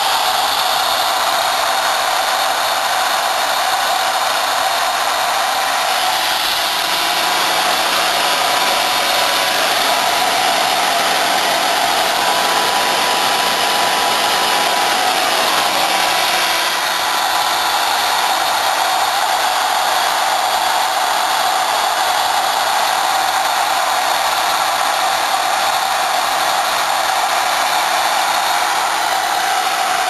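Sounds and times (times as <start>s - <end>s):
cnc machine hiss: 3.3s - 30.0s.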